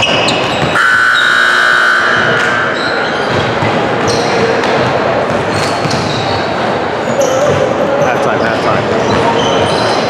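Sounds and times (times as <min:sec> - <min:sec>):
basketballs bouncing on court: 0:00.0 - 0:10.0
scoreboard buzzer: 0:00.8 - 0:03.0.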